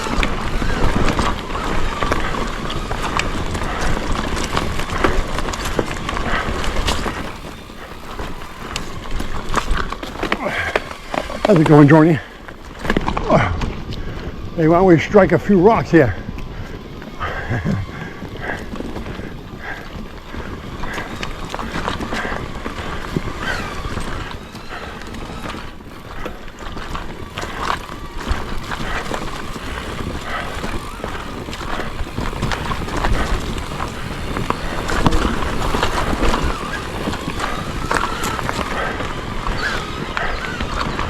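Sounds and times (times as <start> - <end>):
wind rushing over microphone: 0.0 - 41.0
faint wavering whine: 27.2 - 38.8.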